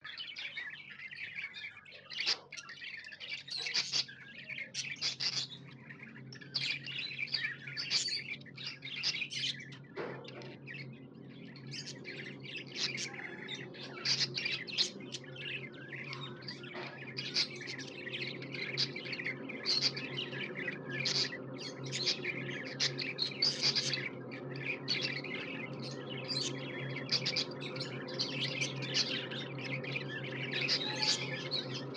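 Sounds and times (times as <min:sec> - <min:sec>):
budgerigar chirping and chattering: 0:01.4 - 0:05.7, 0:11.8 - 0:20.4, 0:21.0 - 0:24.0, 0:30.3 - 0:31.8.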